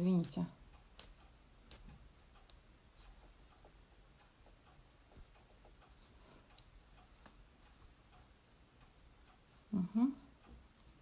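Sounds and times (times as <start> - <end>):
small scissors snipping: 0.2 - 2.6.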